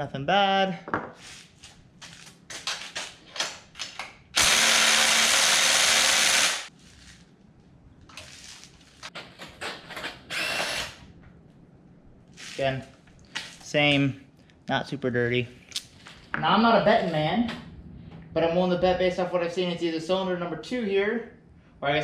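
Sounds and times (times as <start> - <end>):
power tool running: 4.4 - 6.7.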